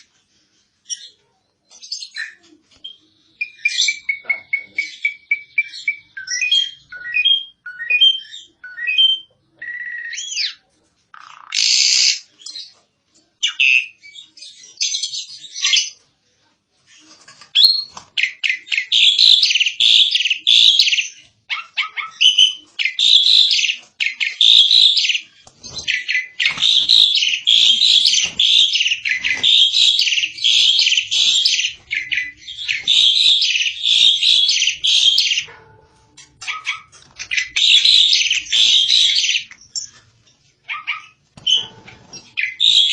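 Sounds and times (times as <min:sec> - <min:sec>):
fast chattering birdsong: 0:00.8 - 0:12.8, 0:16.9 - 0:35.5, 0:36.2 - 0:42.9
bird calls: 0:17.0 - 0:35.5, 0:36.2 - 0:40.0, 0:40.7 - 0:42.9.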